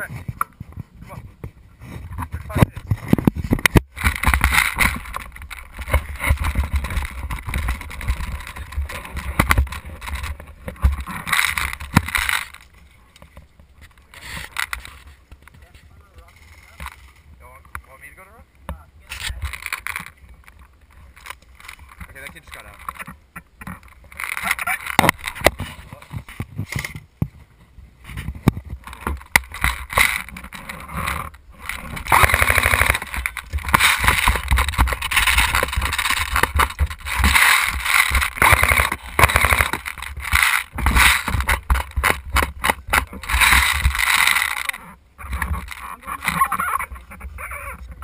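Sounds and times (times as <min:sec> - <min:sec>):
gun rattling and knocking: 0:02.1 - 0:17.8, 0:19.1 - 0:27.4, 0:28.1 - 0:47.4.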